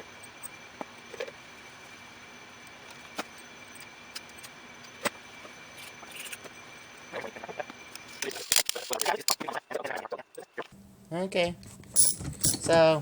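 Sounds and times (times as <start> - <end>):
faint hum: 0.0 - 13.0.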